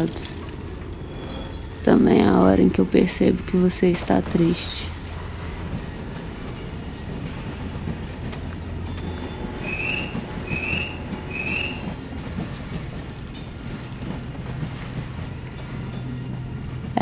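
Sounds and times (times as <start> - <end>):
freight train rumbling: 0.0 - 17.0
metal wheels squealing: 8.9 - 12.0.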